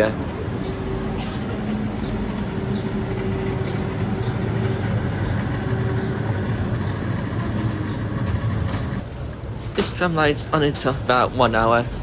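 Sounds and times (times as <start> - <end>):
tram rumbling on track: 0.0 - 12.0.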